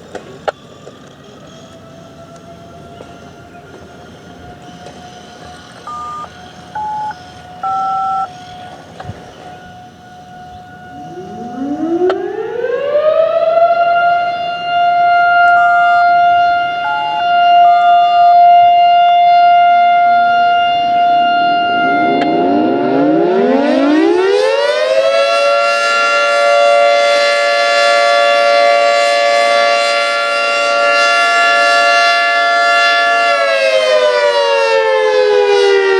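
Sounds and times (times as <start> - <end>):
steady siren tone: 0.8 - 35.9
siren winding up: 5.8 - 8.4, 21.4 - 24.6
radio paging beeps: 5.9 - 8.3.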